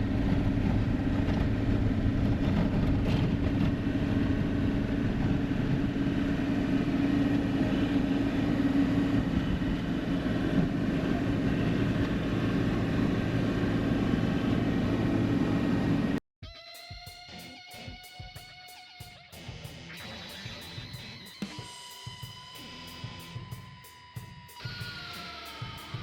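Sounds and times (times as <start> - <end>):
road noise: 0.0 - 16.2
truck engine drone: 0.0 - 16.2, 19.3 - 26.0.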